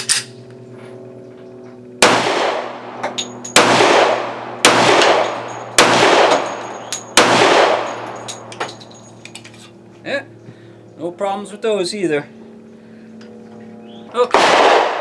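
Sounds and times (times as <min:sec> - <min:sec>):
pistol shots with echo: 0:02.0 - 0:08.1, 0:14.3 - 0:15.0
light metallic clinks: 0:03.0 - 0:03.6, 0:06.4 - 0:07.2, 0:07.8 - 0:09.8.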